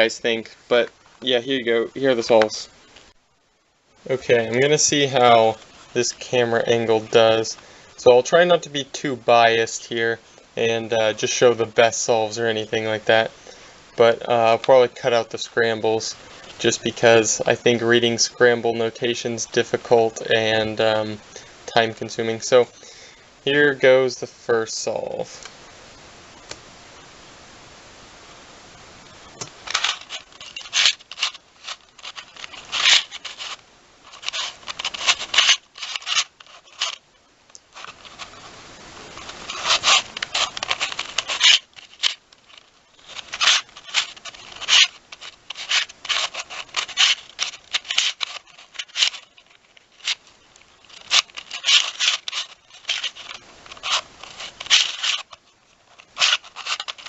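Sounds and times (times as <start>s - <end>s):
low steady hiss: 0.0s - 57.0s
plastic puzzle clicking and scraping: 29.4s - 38.5s, 39.1s - 57.0s.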